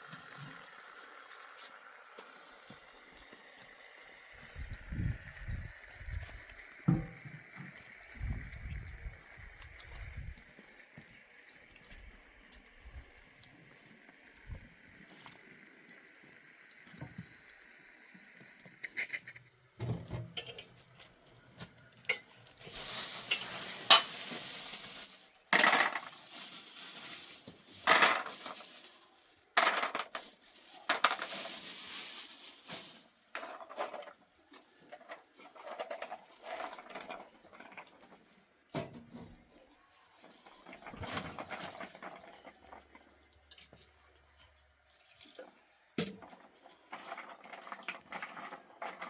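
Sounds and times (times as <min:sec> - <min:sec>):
metal pots clattering and scraping: 0:19.0 - 0:20.8, 0:22.1 - 0:26.2, 0:40.6 - 0:43.0.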